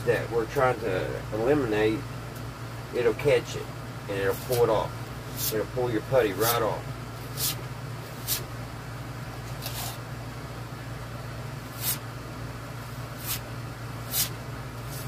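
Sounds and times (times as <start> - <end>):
steady low hum: 0.0 - 15.0
card scraping putty on wood: 7.4 - 7.6, 11.7 - 12.0, 13.2 - 13.4, 14.1 - 15.0.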